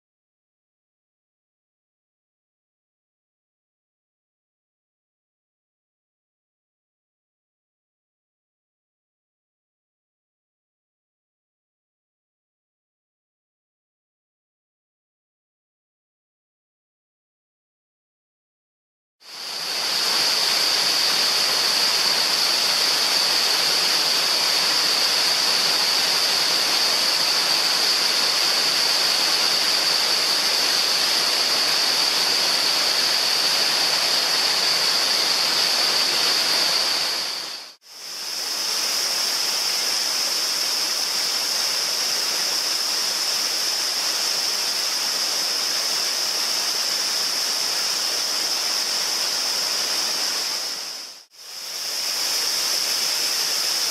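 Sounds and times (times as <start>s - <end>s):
high-pitched hiss-like tone: 19.3s - 53.9s
waterfall rushing: 19.3s - 53.9s.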